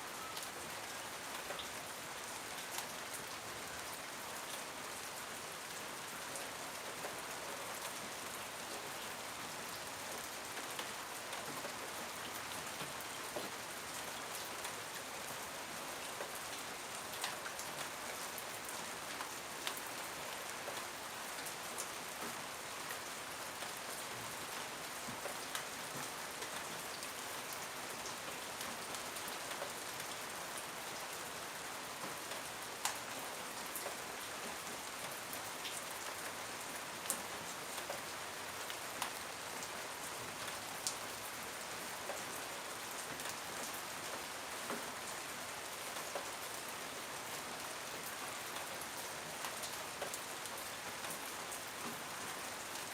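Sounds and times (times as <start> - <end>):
steady rain hiss: 0.0 - 52.9
raindrops striking a surface: 10.1 - 46.7, 48.1 - 52.9.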